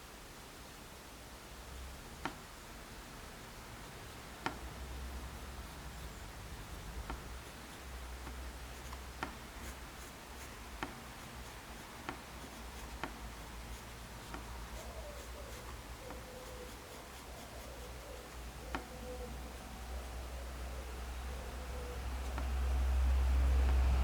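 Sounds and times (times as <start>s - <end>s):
pencil scratching on paper: 5.6s - 20.8s.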